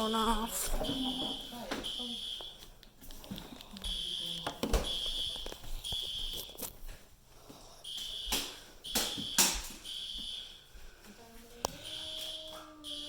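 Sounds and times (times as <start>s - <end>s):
fire alarm horns beeping: 0.0s - 2.6s, 3.9s - 6.5s, 7.8s - 10.6s, 11.8s - 13.0s.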